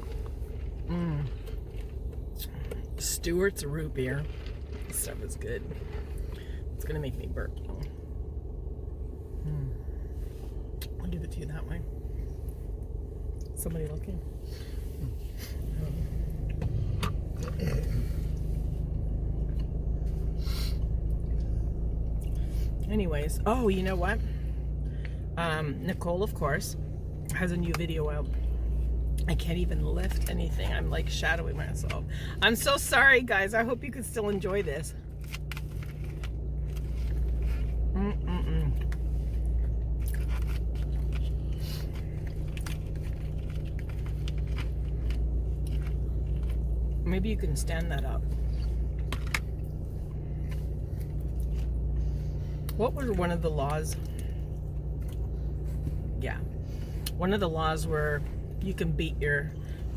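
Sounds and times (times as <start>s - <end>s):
car cabin hum: 0.0s - 59.9s
person eating: 16.3s - 18.6s
person chewing food: 16.3s - 19.8s, 35.2s - 46.6s.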